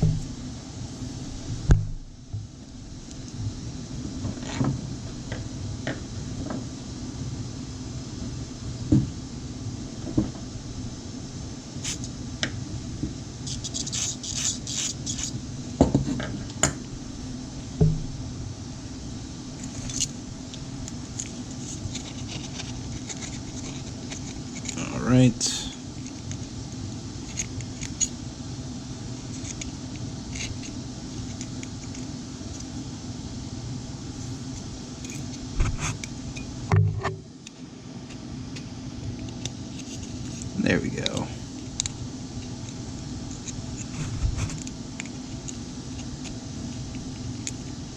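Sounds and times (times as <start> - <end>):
steady low hum: 0.0 - 47.9
scratchy scraping: 11.8 - 12.1, 13.5 - 15.4, 21.2 - 24.9
small metal parts clinking: 19.7 - 20.1.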